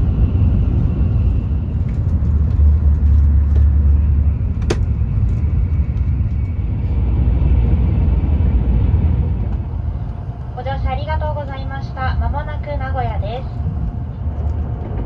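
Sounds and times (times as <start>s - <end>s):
train cabin rumble: 0.0s - 15.0s.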